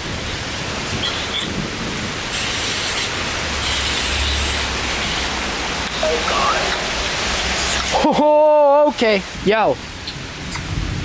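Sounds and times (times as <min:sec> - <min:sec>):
wind buffeting microphone: 0:00.0 - 0:06.0, 0:09.2 - 0:11.0
heavy rain pouring: 0:00.0 - 0:11.0.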